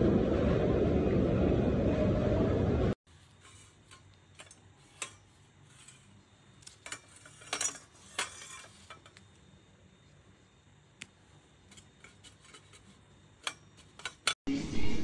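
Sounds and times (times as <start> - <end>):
loud steady noise: 0.0 - 2.9.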